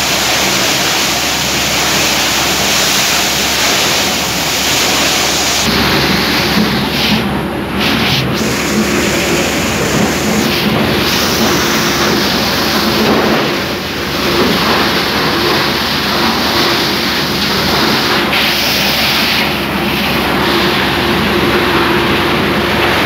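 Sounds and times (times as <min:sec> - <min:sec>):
plastic crusher grinding: 0:00.0 - 0:23.0
steady machine hum: 0:00.0 - 0:23.0.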